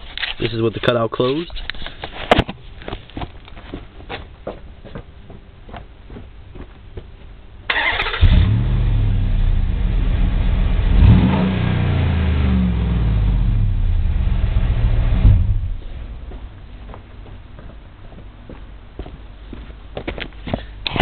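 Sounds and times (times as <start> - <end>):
car engine idling and revving: 8.2 - 16.3.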